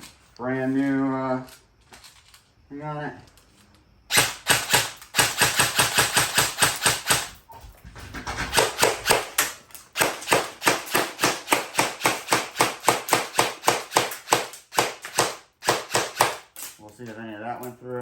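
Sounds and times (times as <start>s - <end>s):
airsoft gun shots: 4.1s - 7.3s, 8.5s - 16.5s.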